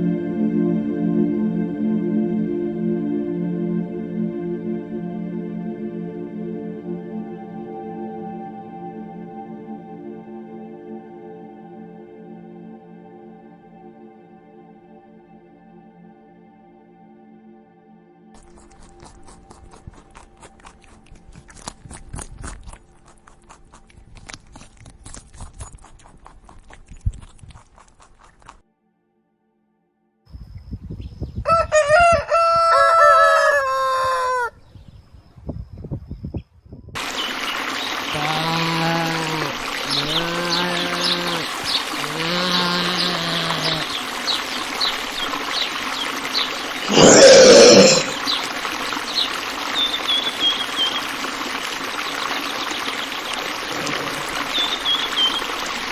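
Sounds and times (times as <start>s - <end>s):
rooster crowing: 31.4s - 34.6s
rushing water noise: 37.0s - 55.9s.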